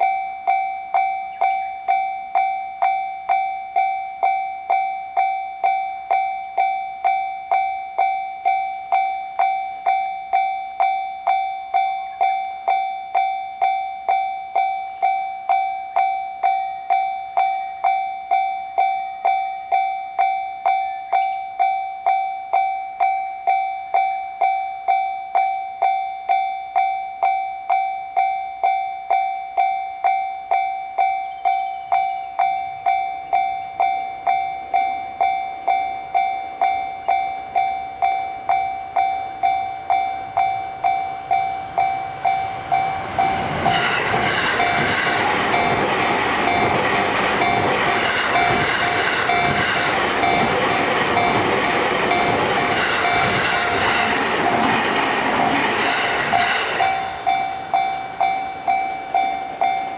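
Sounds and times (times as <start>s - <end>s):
level-crossing warning bell: 0.0s - 59.9s
train running noise: 34.7s - 59.9s.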